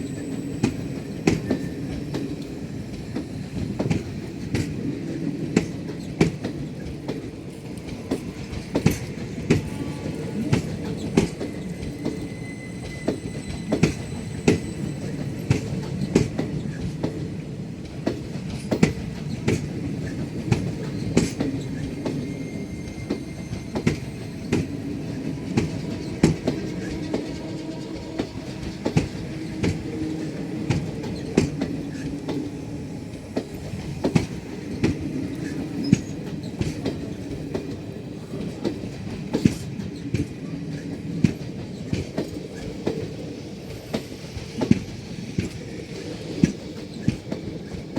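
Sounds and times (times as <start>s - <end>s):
faint high wheel squeal: 0.0s - 3.7s, 9.5s - 16.8s, 20.9s - 34.0s
train wheels rumbling: 0.0s - 47.9s
rail joint clicks and knocks: 0.2s - 47.9s.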